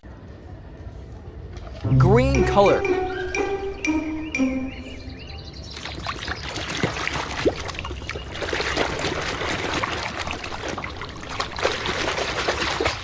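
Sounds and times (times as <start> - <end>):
water sloshing and trickling: 5.7 - 13.0
small splashes and plops: 5.8 - 13.0.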